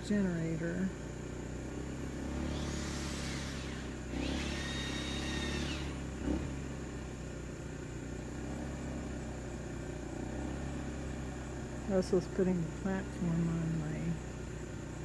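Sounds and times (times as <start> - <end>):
steady whine: 0.0 - 6.6
generator humming: 0.0 - 15.0
vehicles passing by: 0.0 - 15.0.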